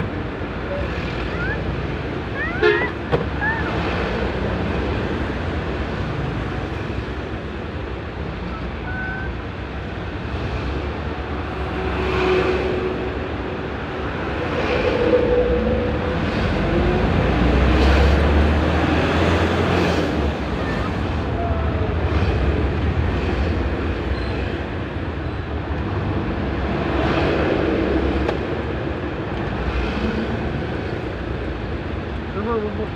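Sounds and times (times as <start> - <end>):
road and wind noise: 0.0 - 32.9.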